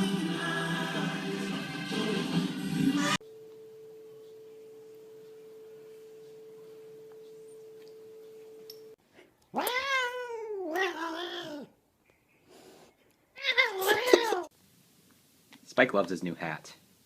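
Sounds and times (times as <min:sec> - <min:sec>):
faint steady hum: 0:03.2 - 0:09.5
cat meowing: 0:09.6 - 0:11.7, 0:13.4 - 0:14.5.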